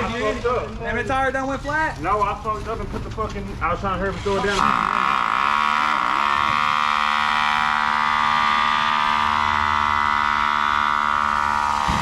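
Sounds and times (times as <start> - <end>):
machine whine: 4.2 - 12.0.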